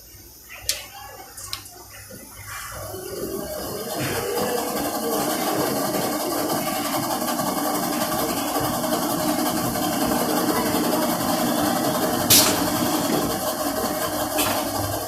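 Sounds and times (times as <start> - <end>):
factory machinery humming: 1.5 - 15.0
sharp clack: 12.3 - 12.8.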